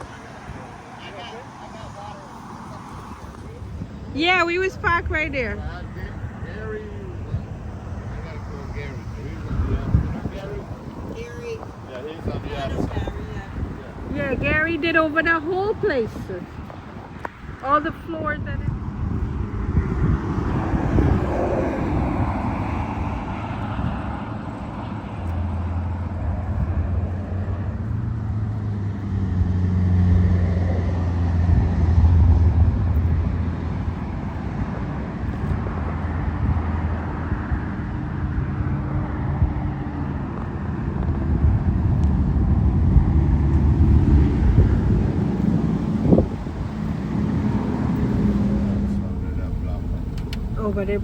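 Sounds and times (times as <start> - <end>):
car engine running: 0.0 - 18.6, 41.4 - 51.0
road noise: 0.0 - 51.0.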